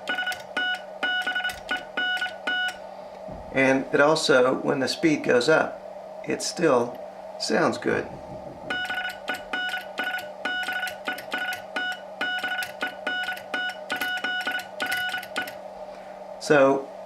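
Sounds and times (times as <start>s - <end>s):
morse code beeps: 0.0s - 2.8s, 8.7s - 15.6s.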